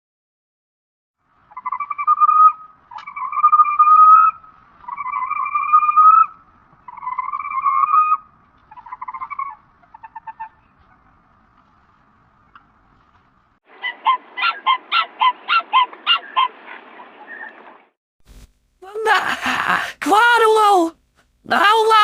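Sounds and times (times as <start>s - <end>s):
drawn-out creature calls: 1.4s - 11.2s, 13.7s - 17.8s.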